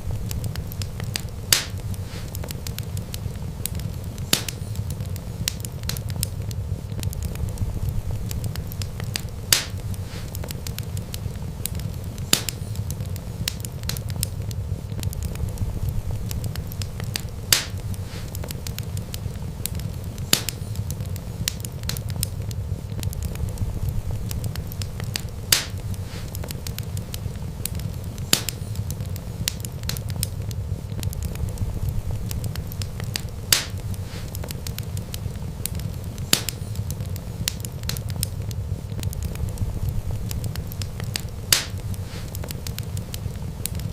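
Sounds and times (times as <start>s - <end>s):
low rumble: 0.0s - 2.0s, 6.0s - 10.0s, 14.1s - 17.1s, 22.1s - 25.1s, 30.4s - 34.0s, 38.4s - 41.3s
fire popping sharply: 0.0s - 43.9s
wood fire crackling: 0.0s - 43.9s.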